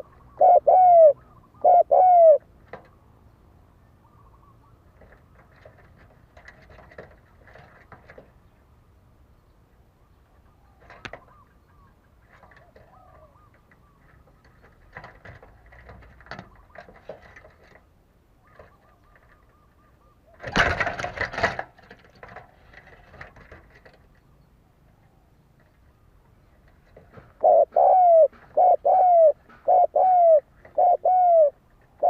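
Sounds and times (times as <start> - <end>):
faint bird chirps: 2.9 - 4.9, 9.4 - 14.7, 18.4 - 20.4.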